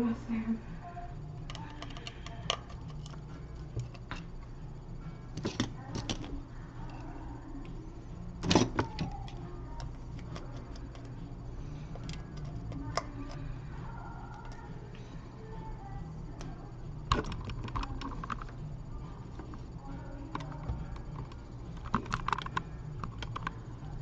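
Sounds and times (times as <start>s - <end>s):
steady low hum: 0.0s - 24.0s
small tools clicking and tapping: 1.4s - 4.3s, 5.4s - 7.1s, 8.4s - 11.2s, 11.9s - 13.5s, 20.3s - 23.6s.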